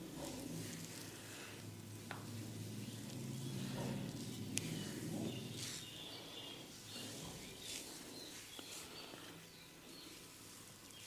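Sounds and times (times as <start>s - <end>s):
hands massaging oiled hair: 0.0s - 11.0s
steady low hum: 0.0s - 11.0s.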